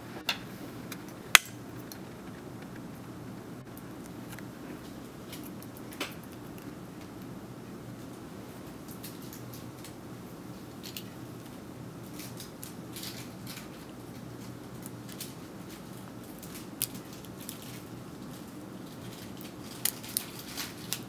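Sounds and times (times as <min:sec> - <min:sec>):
low room hum: 0:00.0 - 0:21.0.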